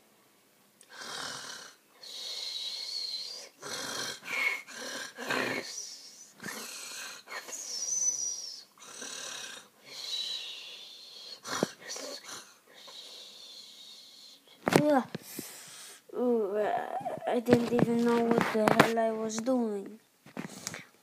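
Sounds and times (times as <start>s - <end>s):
man snoring with whistling note: 0.9s - 14.4s.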